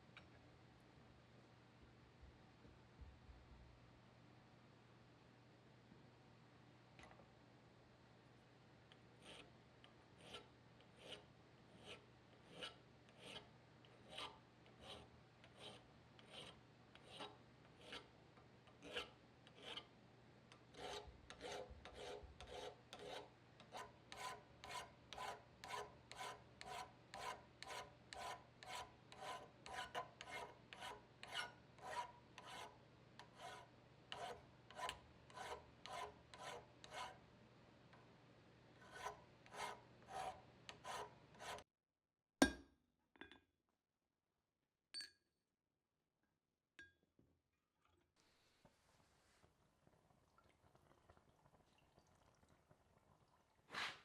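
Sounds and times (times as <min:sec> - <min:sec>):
hand file rasping: 0:09.2 - 0:09.5, 0:10.2 - 0:18.1, 0:18.7 - 0:19.9, 0:20.6 - 0:37.2, 0:38.8 - 0:41.6.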